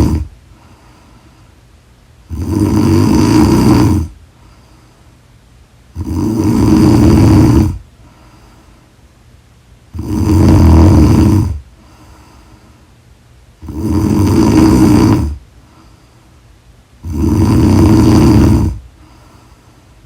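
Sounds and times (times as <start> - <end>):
person snoring loudly: 0.0 - 0.3, 2.3 - 4.2, 5.9 - 7.8, 9.9 - 11.7, 13.6 - 15.4, 17.0 - 18.9.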